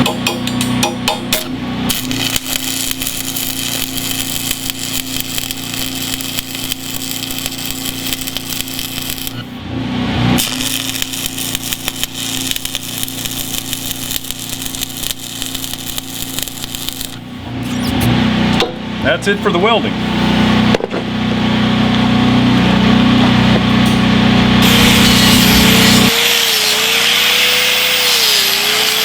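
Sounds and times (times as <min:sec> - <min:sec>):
welding arc crackling and hissing: 0:01.3 - 0:09.6, 0:10.4 - 0:18.2, 0:24.6 - 0:29.0.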